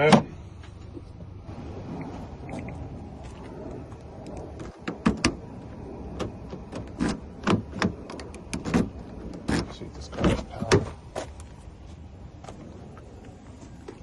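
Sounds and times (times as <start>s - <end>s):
low background rumble: 0.0s - 14.0s.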